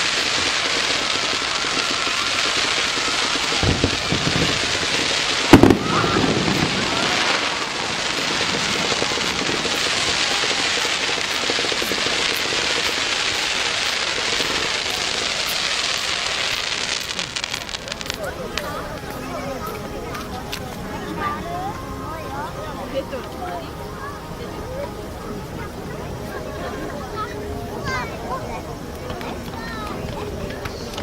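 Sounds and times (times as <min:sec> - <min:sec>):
dull firework thumps: 0:00.0 - 0:10.2
loud sharp firework bang: 0:00.0 - 0:18.7
fireworks crackling: 0:00.0 - 0:31.0.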